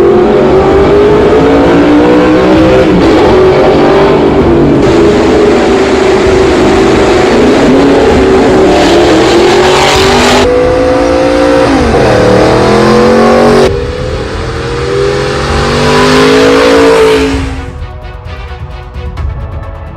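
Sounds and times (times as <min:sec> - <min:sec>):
car engine revving loud: 0:00.0 - 0:17.7.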